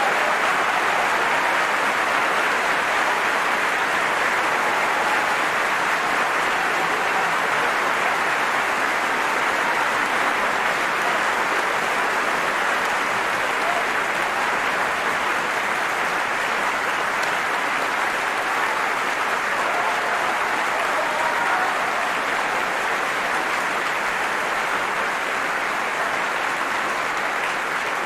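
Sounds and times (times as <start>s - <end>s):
audience applauding: 0.0s - 28.0s
faint shouts of approval: 19.5s - 22.5s.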